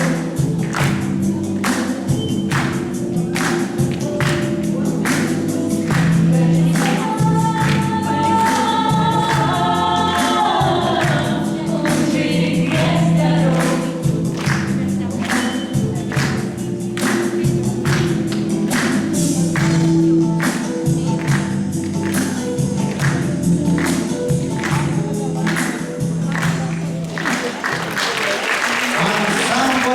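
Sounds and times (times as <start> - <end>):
voices singing together: 0.0 - 19.0
steady music beat: 0.0 - 27.7.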